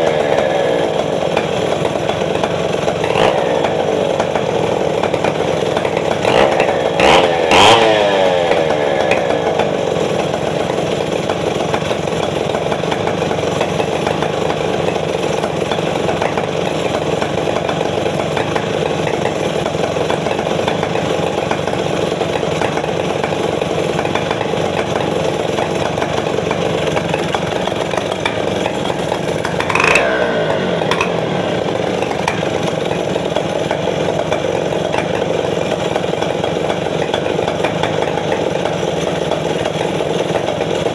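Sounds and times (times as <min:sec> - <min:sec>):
chainsaw engine idling: 0:00.0 - 0:40.9
chainsaw throttle blips: 0:00.0 - 0:40.9.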